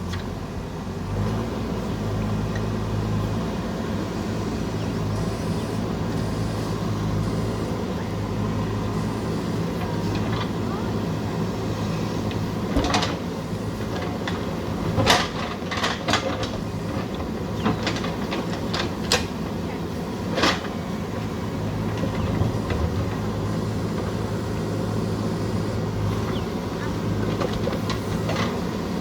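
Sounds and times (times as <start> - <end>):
diesel engine running: 0.0 - 29.0
machine clanks and knocks: 12.3 - 19.6.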